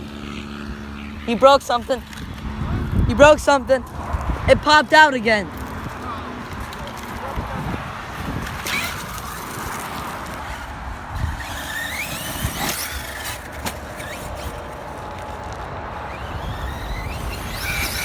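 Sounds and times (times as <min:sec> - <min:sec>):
electric toy truck motor whining: 0:08.1 - 0:18.0.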